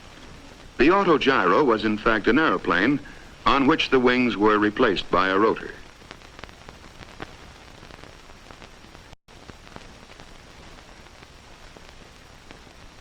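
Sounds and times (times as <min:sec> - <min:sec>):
faint clicks and crackles: 0:00.0 - 0:01.7, 0:05.2 - 0:13.0
film soundtrack hiss: 0:00.0 - 0:13.0.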